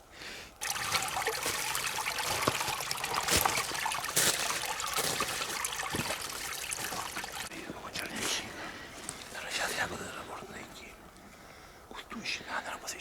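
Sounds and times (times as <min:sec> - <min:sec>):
forest brook trickling: 0:00.6 - 0:10.6.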